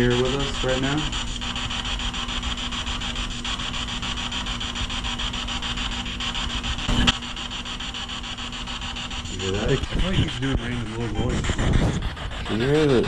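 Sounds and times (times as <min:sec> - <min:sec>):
radio scanner pulsing static: 0:00.0 - 0:13.0.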